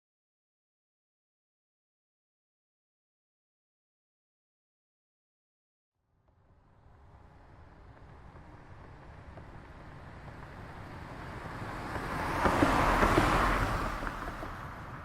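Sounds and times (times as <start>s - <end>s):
car passing by: 6.5s - 15.0s.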